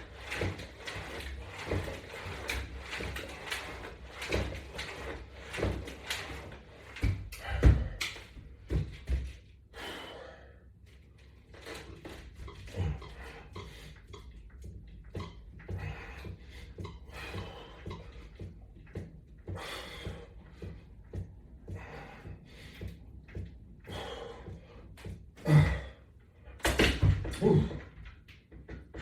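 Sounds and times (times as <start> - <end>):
exercise hardware knocking: 11.6 - 25.4.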